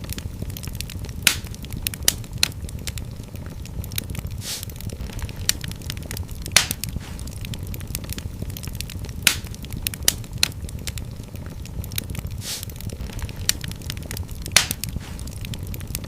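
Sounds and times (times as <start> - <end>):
fire crackling and popping: 0.0 - 16.0
fire rumbling in a fireplace: 0.0 - 16.0
brief fire hiss: 4.4 - 4.7, 12.4 - 12.7.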